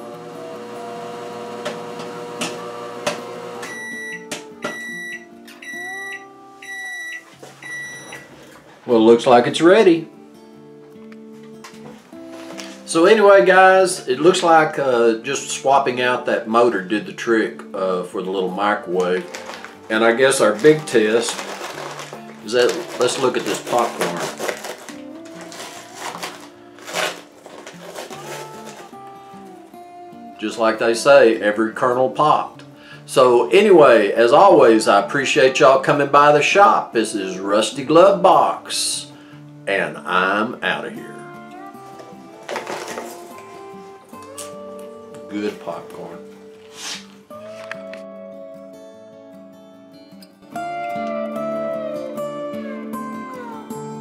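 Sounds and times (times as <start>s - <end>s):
microwave oven humming: 0.0s - 4.0s
background music plucked strings: 0.0s - 54.0s
popcorn popping: 1.4s - 3.7s, 19.0s - 28.9s
microwave beeps: 3.5s - 8.3s.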